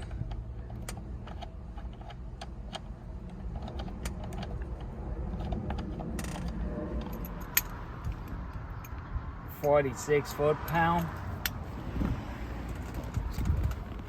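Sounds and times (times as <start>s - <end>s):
steady low hum: 0.0s - 10.0s.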